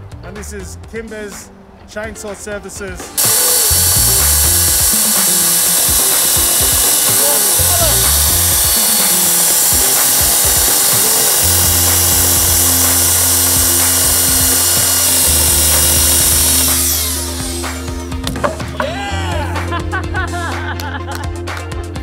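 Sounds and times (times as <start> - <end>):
background music with a beat: 0.0 - 22.0
chainsaw cutting: 3.2 - 19.8.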